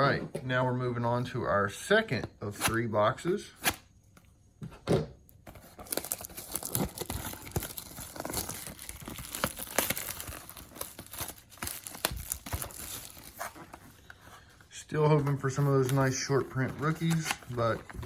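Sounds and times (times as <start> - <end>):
plastic shrink wrap crackling: 5.8 - 13.9, 15.4 - 18.0.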